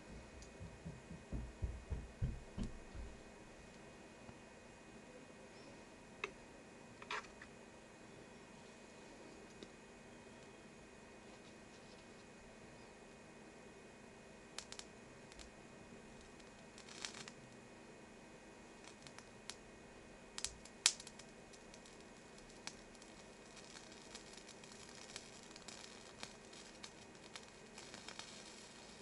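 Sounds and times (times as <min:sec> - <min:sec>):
paper crackling as it burns: 0:14.4 - 0:17.7, 0:18.5 - 0:29.0.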